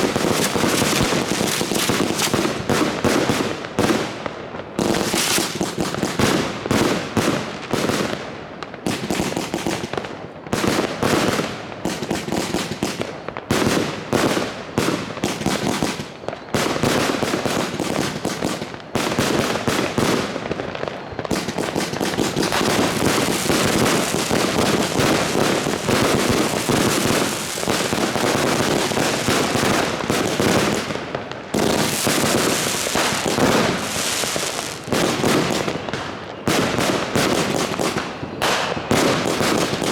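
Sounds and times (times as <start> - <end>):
firework bangs and crackling: 0.0 - 39.9.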